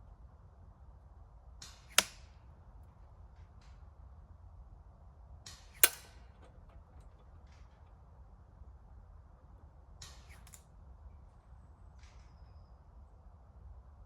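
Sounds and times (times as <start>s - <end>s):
airsoft rifle shots: 5.5s - 6.7s.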